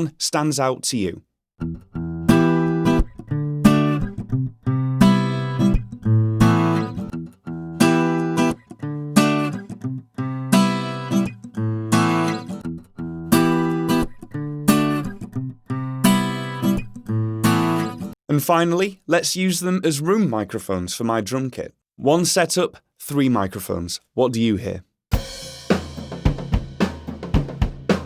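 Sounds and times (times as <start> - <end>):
acoustic guitar strummed: 1.6 - 18.1.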